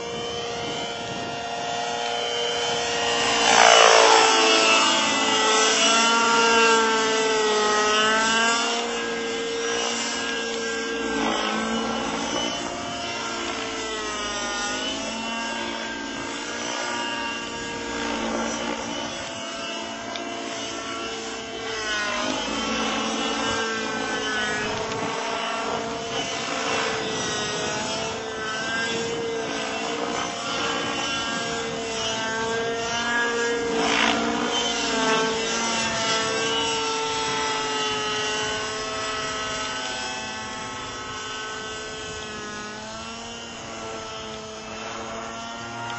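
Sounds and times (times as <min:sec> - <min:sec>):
model helicopter engine and rotor whine: 0:00.0 - 0:45.9.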